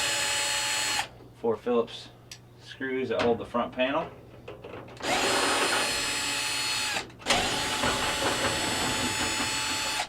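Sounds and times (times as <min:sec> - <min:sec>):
power drill motor running: 0:00.0 - 0:01.1, 0:05.0 - 0:10.0.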